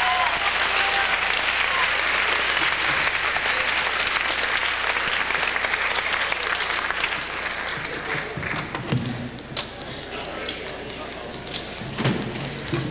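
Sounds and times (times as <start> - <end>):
audience applauding: 0.0 - 8.8.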